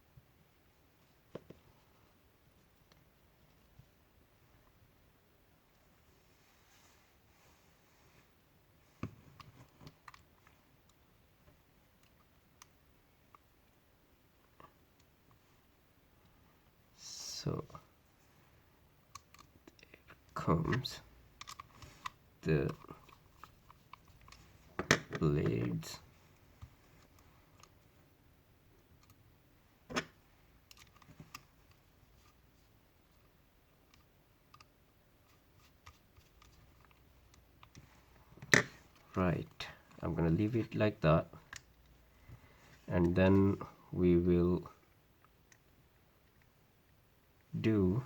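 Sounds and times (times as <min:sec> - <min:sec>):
small plastic parts clicking: 0:09.4 - 0:11.0, 0:19.0 - 0:25.9, 0:29.9 - 0:32.3, 0:33.8 - 0:39.2.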